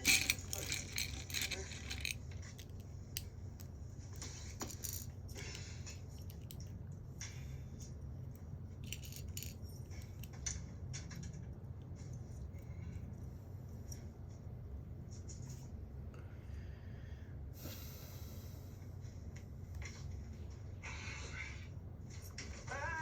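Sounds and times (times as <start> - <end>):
plastic pieces clicking and rattling: 0.0 - 3.7, 4.6 - 5.1, 8.8 - 10.6
steady low hum: 0.0 - 22.6.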